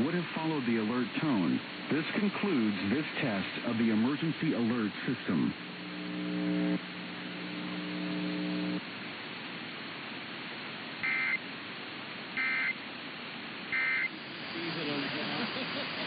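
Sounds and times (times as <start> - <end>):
low steady buzz: 0.0 - 16.0
radio hiss: 0.0 - 16.0
data bursts: 11.0 - 11.4, 12.4 - 12.8, 13.7 - 16.0.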